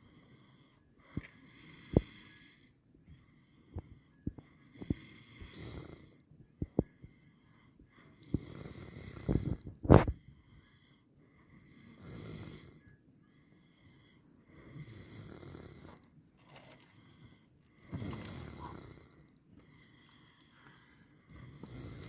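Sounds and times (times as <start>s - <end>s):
person snoring: 4.8s - 6.2s, 17.8s - 19.3s, 21.3s - 22.0s.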